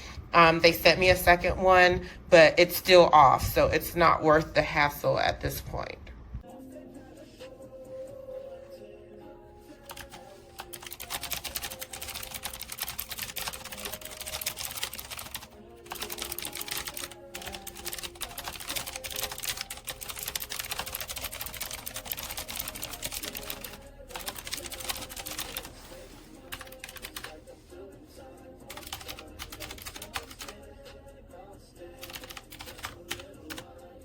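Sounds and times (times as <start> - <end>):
soft background music: 0.3 - 34.0
mechanical keyboard typing: 9.9 - 25.8, 26.5 - 27.4, 28.7 - 30.6, 32.0 - 33.7.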